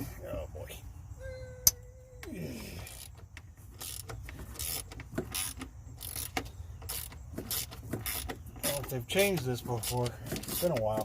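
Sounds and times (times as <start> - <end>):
ratchet clicking: 2.9 - 11.0.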